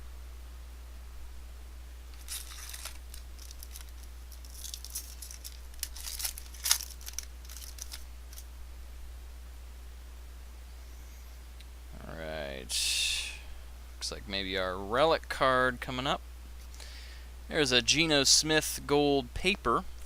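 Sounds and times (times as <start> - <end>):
wrapper tearing and crinkling: 2.1 - 8.4.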